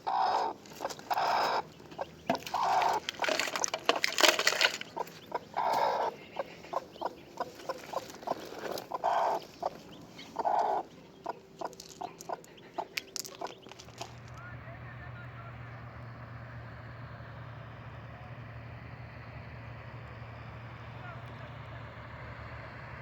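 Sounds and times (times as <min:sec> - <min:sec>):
chickens clucking: 0:00.0 - 0:14.2.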